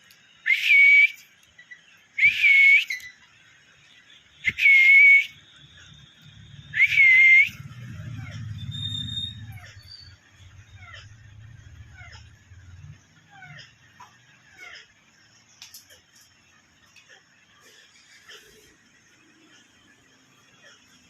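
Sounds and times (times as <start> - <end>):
parrot whistling: 0.4 - 1.2, 2.2 - 3.2, 4.4 - 5.4, 6.6 - 11.1
faint low rumble: 7.5 - 14.0.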